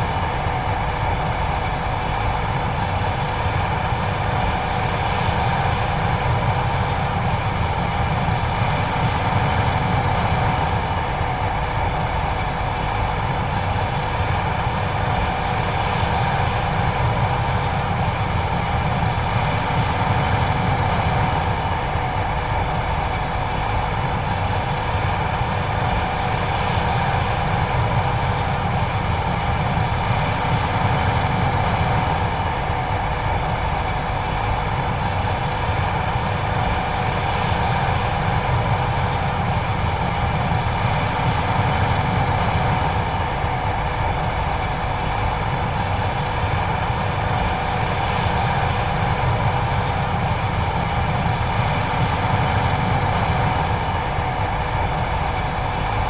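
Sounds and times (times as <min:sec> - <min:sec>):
combine harvester drone: 0:00.0 - 0:56.0
steady whining tones: 0:00.0 - 0:56.0.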